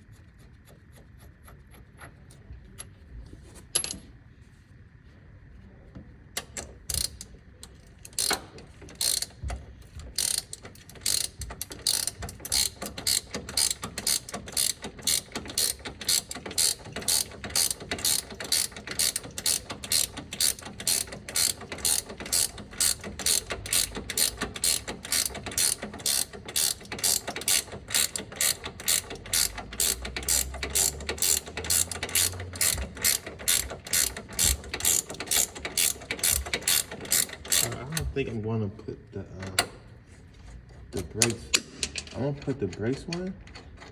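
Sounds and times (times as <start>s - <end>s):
ratchet wrench clicking: 6.4s - 9.4s, 10.1s - 38.1s.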